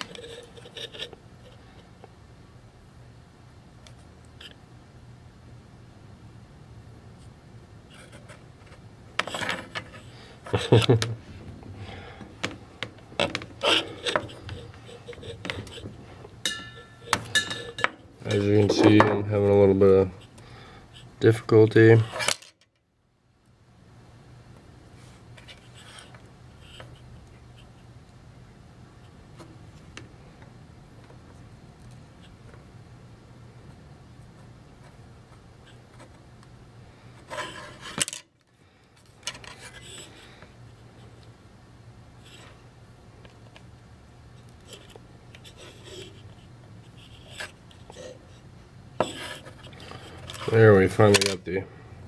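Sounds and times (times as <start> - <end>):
tools scratching and clicking: 0.0 - 1.6, 13.2 - 15.9
low steady hum: 0.0 - 52.0
hand tools scraping and tapping: 12.4 - 19.2, 49.0 - 51.3.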